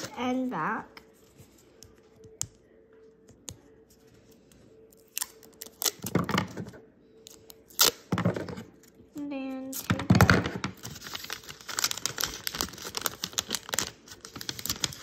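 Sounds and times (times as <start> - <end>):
paper crinkling and tape ripping: 4.9 - 6.2, 10.8 - 15.0.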